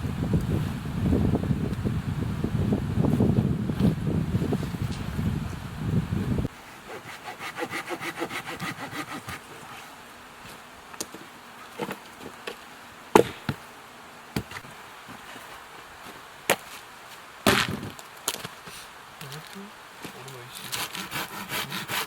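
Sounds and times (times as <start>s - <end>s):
hand saw cutting wood: 6.7s - 9.8s, 20.5s - 22.0s
wood knocking and snapping: 13.1s - 13.6s.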